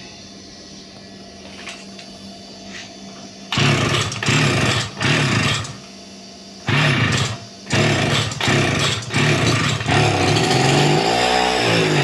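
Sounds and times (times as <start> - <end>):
small engine sputtering: 6.7 - 12.0.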